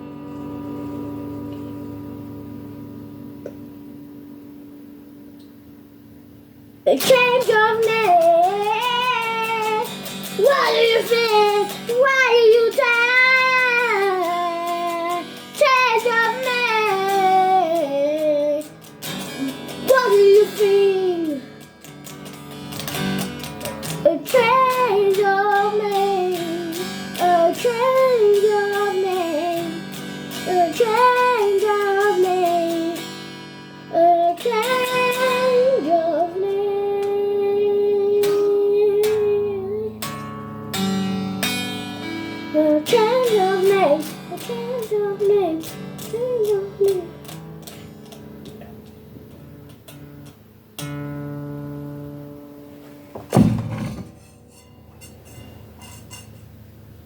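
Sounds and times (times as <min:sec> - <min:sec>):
plucked guitar: 0:00.0 - 0:57.0
high voice singing with vibrato: 0:06.9 - 0:21.6, 0:24.0 - 0:33.1, 0:33.9 - 0:40.0, 0:42.5 - 0:47.3.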